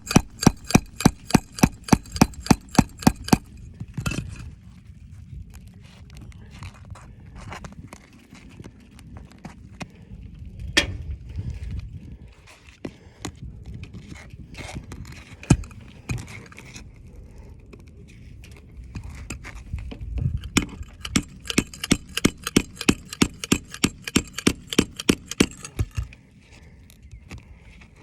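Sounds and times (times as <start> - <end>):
sharp taps: 0.0 - 3.5, 20.5 - 26.1
metal tool scraping roof shingle: 0.0 - 4.3, 15.4 - 16.5, 20.2 - 26.2.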